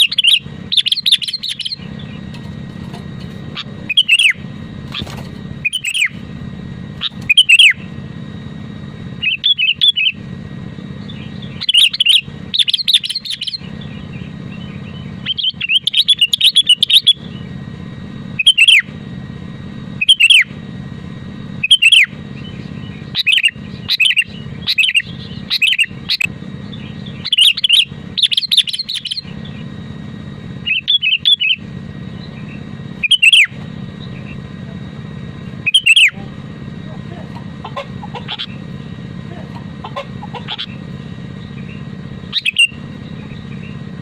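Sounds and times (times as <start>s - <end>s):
bird singing falling notes: 0.0s - 6.2s, 7.0s - 8.0s, 11.0s - 17.6s, 40.4s - 43.9s
steady low hum: 0.0s - 44.0s.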